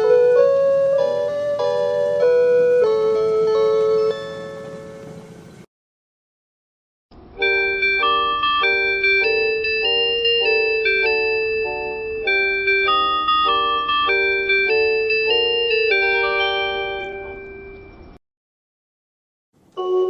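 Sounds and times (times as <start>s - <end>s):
electronic announcement chime melody: 0.0s - 5.0s, 7.4s - 18.2s, 19.8s - 20.0s.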